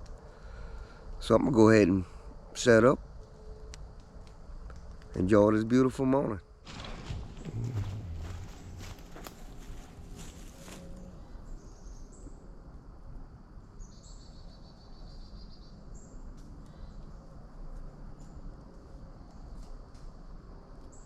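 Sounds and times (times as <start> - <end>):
low background hum: 0.0 - 20.6
crunching footsteps: 6.7 - 11.5.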